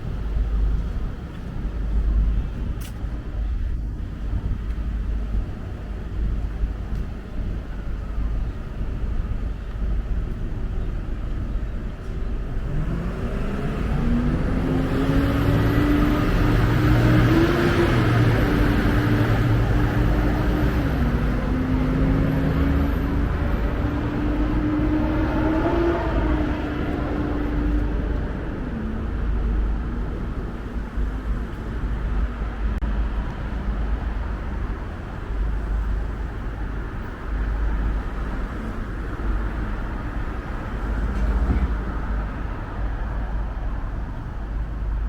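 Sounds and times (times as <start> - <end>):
road traffic rumble: 0.0 - 45.0
vehicle engine revving: 12.6 - 28.2.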